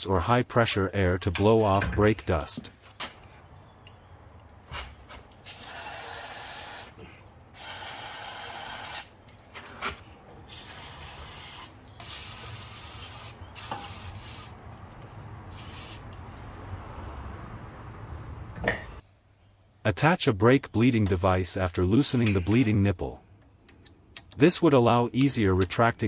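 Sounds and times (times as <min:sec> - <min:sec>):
aerosol spray hissing: 0:05.5 - 0:07.0, 0:07.6 - 0:09.1, 0:10.5 - 0:14.6, 0:15.5 - 0:16.1.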